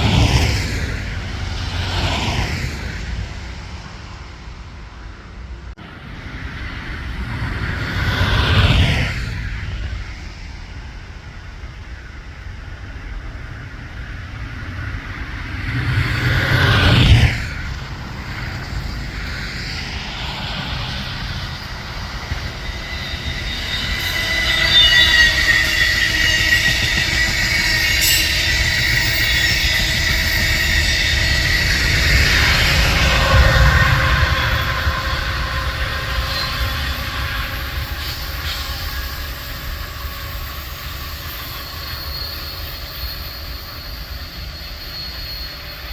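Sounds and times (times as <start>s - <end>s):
train cars rolling: 0.0s - 45.9s
wheel flanges squealing: 14.8s - 45.9s.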